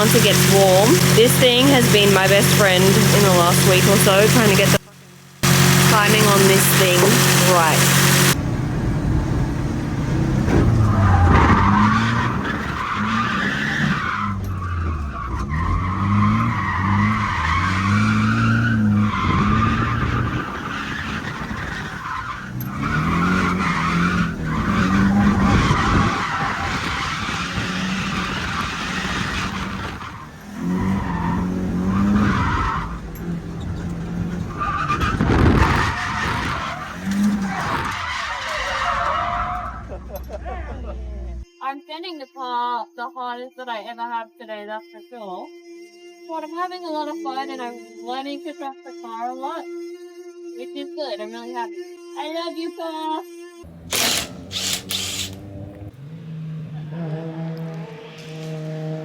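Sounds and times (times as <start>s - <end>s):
tyres squealing: 0.0s - 4.8s, 5.4s - 8.4s, 10.7s - 41.4s, 53.6s - 55.9s
car engine revving: 0.0s - 41.5s, 53.6s - 59.0s.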